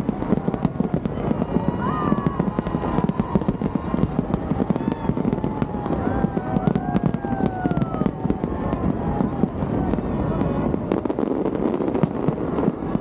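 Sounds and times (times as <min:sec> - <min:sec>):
continuous rumble: 0:00.0 - 0:13.0
fireworks bangs and crackles: 0:00.0 - 0:13.0.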